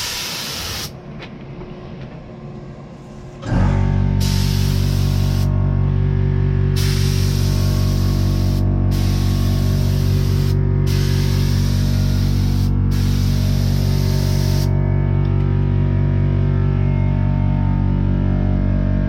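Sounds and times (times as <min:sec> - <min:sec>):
spray paint hissing: 0:00.0 - 0:00.9, 0:04.2 - 0:05.5, 0:06.8 - 0:14.7.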